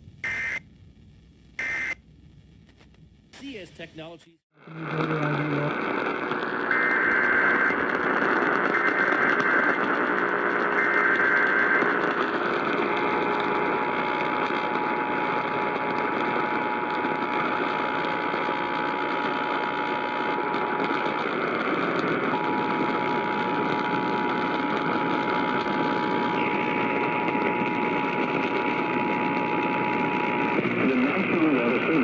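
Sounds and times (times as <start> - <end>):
heavy radio static: 0.2 - 0.6, 1.6 - 2.0, 3.4 - 32.0
two-tone attention signal: 0.2 - 0.6, 1.6 - 2.0, 6.6 - 12.0
warbling data bursts: 6.4 - 13.9.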